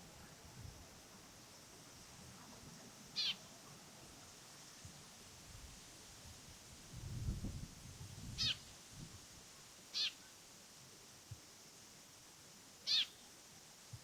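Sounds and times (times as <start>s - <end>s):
bird mewing calls: 3.2s - 3.4s, 12.9s - 13.2s.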